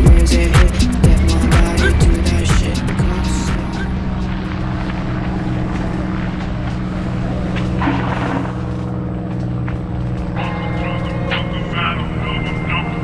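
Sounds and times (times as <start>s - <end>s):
steady low hum: 0.0s - 13.0s
bike tyres rolling on trail: 3.9s - 10.9s.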